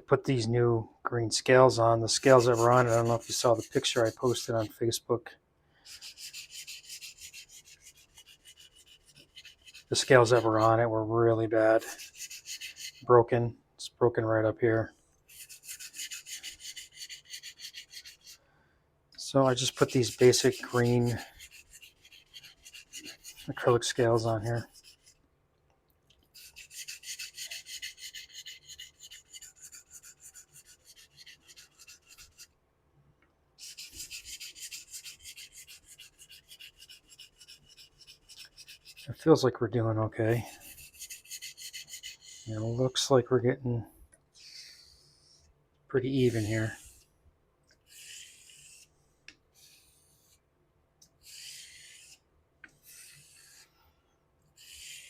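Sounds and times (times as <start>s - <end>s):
razor rasping on whetstone: 2.1s - 4.7s, 5.9s - 10.8s, 11.8s - 13.0s, 15.3s - 18.4s, 19.4s - 25.2s, 26.3s - 32.5s, 33.6s - 39.2s, 40.4s - 42.8s, 46.2s - 47.0s, 47.9s - 48.9s, 51.2s - 52.2s, 52.8s - 53.7s, 54.6s - 55.0s
razor honing on water stone: 2.2s - 4.5s, 19.5s - 25.1s, 26.4s - 32.5s.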